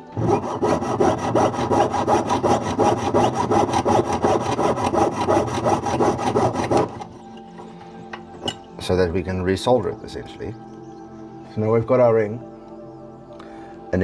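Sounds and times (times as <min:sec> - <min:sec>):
saw cutting metal: 0:00.0 - 0:07.2.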